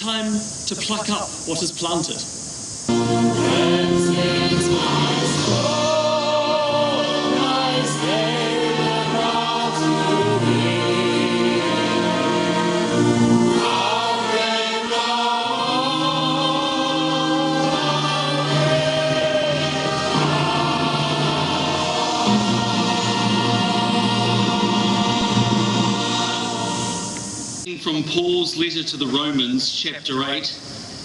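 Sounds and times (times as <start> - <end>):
choir singing held chords: 2.9 - 27.7.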